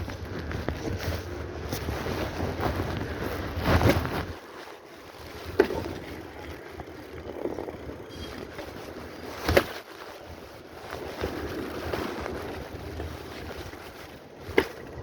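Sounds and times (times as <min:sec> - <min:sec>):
wind buffeting microphone: 0:00.0 - 0:04.5.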